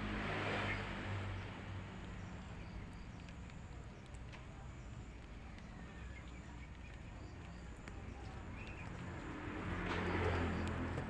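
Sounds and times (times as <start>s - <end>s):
faint clicks: 2.9s - 11.0s.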